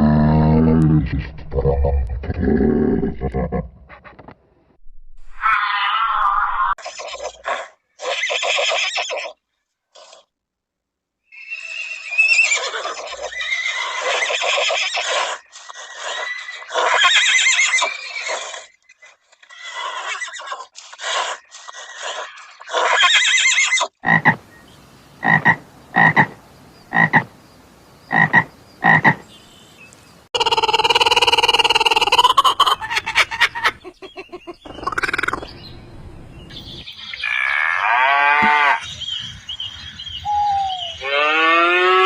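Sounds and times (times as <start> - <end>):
harsh raspy animal calls: 25.2 - 27.3, 28.1 - 29.2, 30.4 - 35.5.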